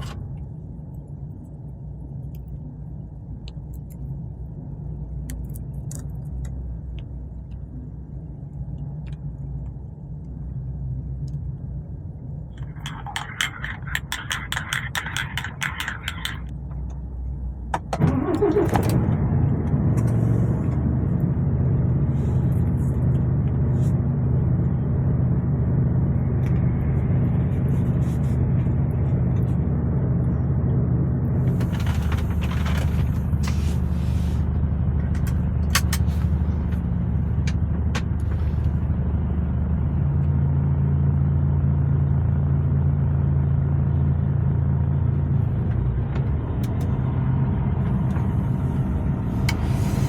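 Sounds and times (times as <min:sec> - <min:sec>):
diesel truck engine running: 0:09.4 - 0:50.0
short hisses: 0:49.4 - 0:50.0.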